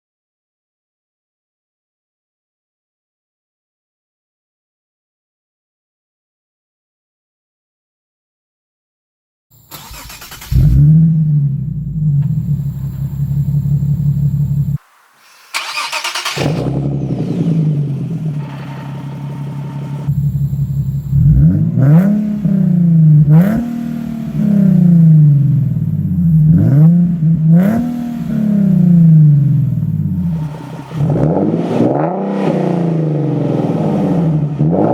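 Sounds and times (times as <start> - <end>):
engine starting with sharp flare: 9.7 - 11.2, 14.2 - 22.4
engine revving: 9.7 - 34.9
car engine idling with deep burble: 10.5 - 14.8, 16.4 - 31.7.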